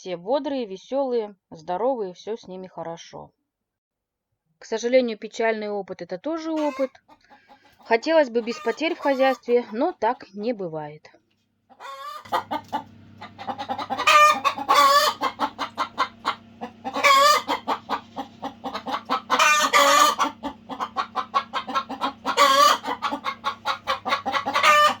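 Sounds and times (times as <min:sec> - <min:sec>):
chickens clucking: 0:06.5 - 0:10.3, 0:11.7 - 0:25.0
loud chicken calls: 0:06.6 - 0:09.8, 0:11.7 - 0:25.0.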